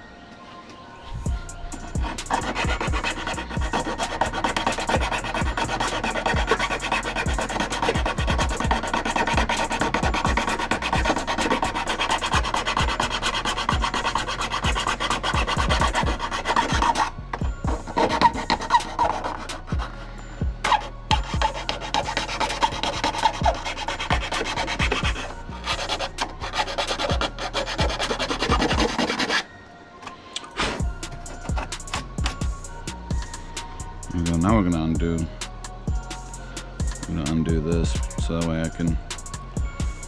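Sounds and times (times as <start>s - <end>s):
hand file rasping plastic: 1.9s - 20.0s, 20.7s - 29.4s, 30.6s - 32.5s.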